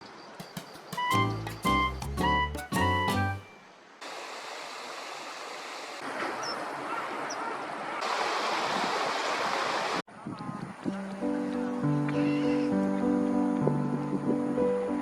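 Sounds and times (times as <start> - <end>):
flowing water rushing: 0.2 - 10.0
background music: 0.6 - 3.6, 10.9 - 15.0.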